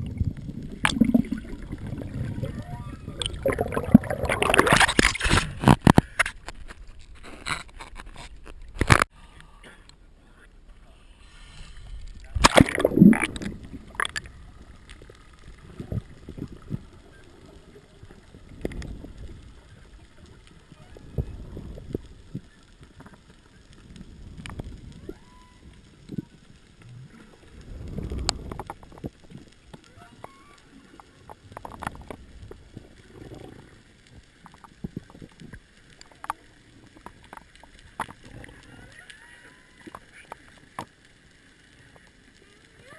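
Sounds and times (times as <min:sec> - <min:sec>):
sharp clicks and pops: 0:00.0 - 0:02.6, 0:03.2 - 0:09.1, 0:12.0 - 0:17.6, 0:21.2 - 0:38.7
water splashing and gurgling: 0:00.0 - 0:09.1, 0:12.0 - 0:42.9
whale call underwater: 0:00.9 - 0:04.6, 0:24.9 - 0:26.4, 0:29.8 - 0:31.0, 0:38.3 - 0:40.3.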